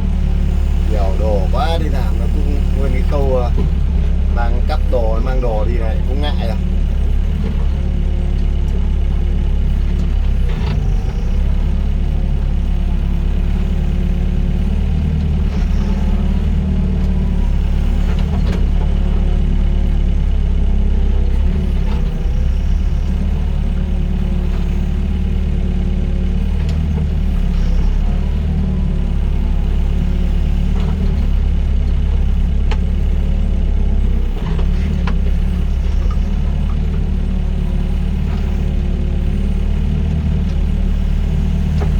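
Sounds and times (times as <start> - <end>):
excavator diesel engine running: 0.0 - 41.9.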